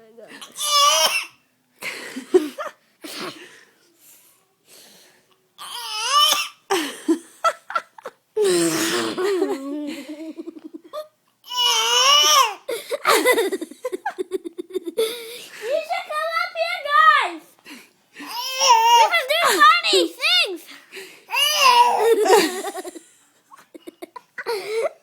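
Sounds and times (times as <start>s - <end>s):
baby pretend coughing: 0.4s - 1.4s, 5.6s - 6.6s
people laughing hard: 13.0s - 15.2s, 22.0s - 25.0s
baby babbling: 18.3s - 19.2s.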